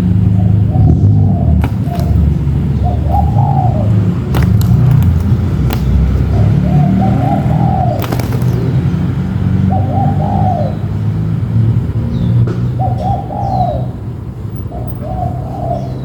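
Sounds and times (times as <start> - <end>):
dove cooing: 0.0 - 11.0, 12.8 - 14.0, 14.7 - 16.0
sharp clicks: 4.3 - 6.5.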